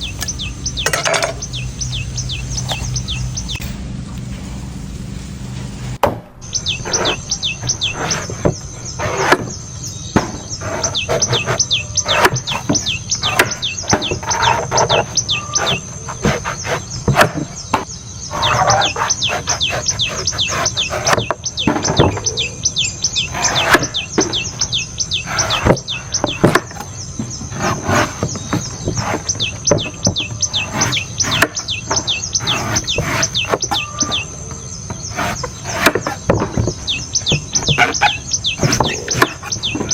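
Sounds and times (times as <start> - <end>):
steady high-pitched whine: 0.0 - 27.6
birds chirping: 0.0 - 39.9.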